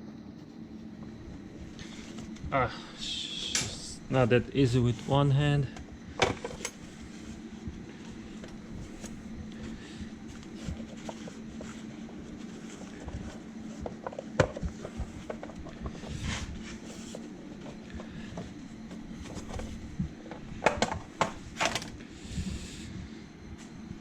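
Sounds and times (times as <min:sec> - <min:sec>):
low hum: 0:00.0 - 0:24.0.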